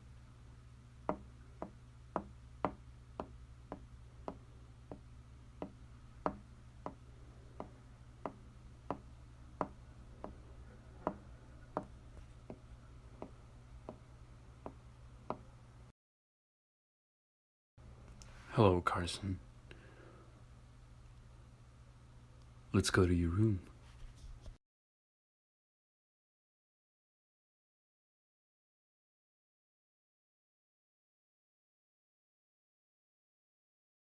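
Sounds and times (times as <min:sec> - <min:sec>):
constant low hum: 0:00.0 - 0:15.9, 0:17.8 - 0:24.6.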